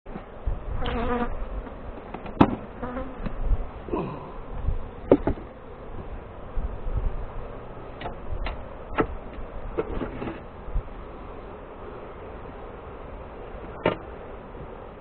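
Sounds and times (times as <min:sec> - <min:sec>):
honeybees buzzing: 0:02.6 - 0:05.0.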